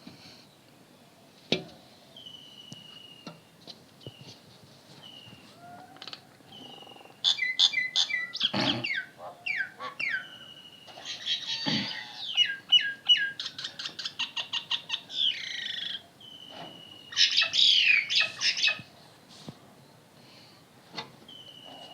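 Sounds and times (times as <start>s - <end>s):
birds whistling: 6.5s - 18.9s, 21.3s - 21.9s
birds squawking: 6.7s - 16.0s, 17.1s - 18.9s
bird chattering: 6.8s - 10.4s.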